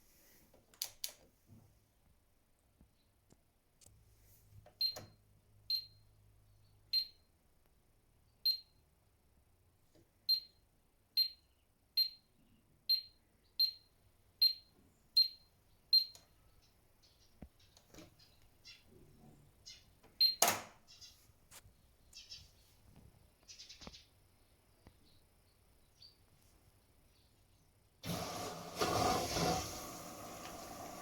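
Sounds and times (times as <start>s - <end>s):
washing machine panel beeps: 4.8s - 6.1s, 6.9s - 7.2s, 8.5s - 8.7s, 10.3s - 10.5s, 11.2s - 11.4s, 12.9s - 16.2s, 20.2s - 20.5s.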